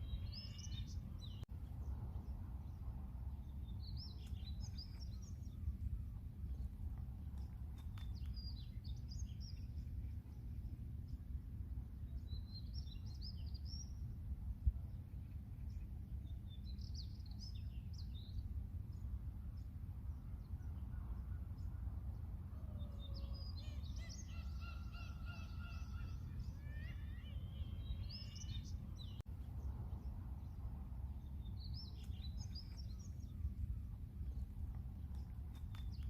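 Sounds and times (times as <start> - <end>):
steady low rumble: 0.0 - 22.6, 25.7 - 36.0
seagulls calling: 23.7 - 28.5.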